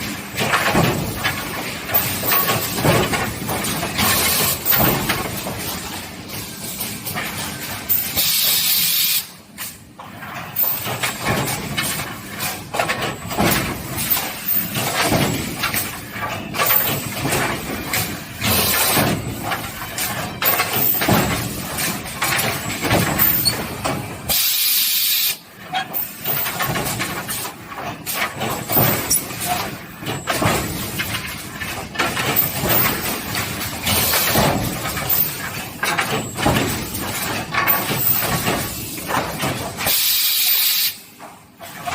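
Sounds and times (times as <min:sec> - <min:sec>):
nailing machine clattering: 0:00.0 - 0:06.3, 0:10.4 - 0:24.4, 0:25.7 - 0:40.0
air hissing: 0:40.0 - 0:41.0.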